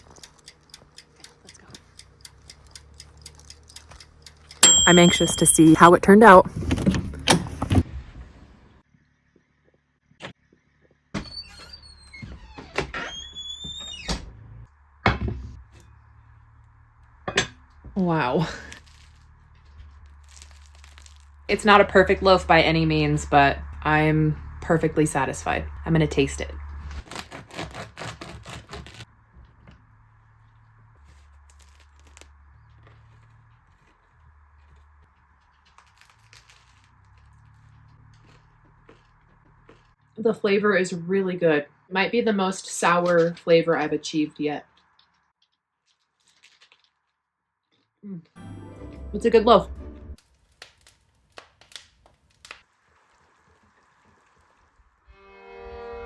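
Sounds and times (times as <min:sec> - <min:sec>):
crusty bread being chewed: 0:00.0 - 0:04.6, 0:15.6 - 0:21.5, 0:26.7 - 0:40.2, 0:44.6 - 0:48.4, 0:50.2 - 0:55.0
door creaking: 0:06.4 - 0:08.1, 0:11.1 - 0:15.6
low steady hum: 0:14.2 - 0:27.3.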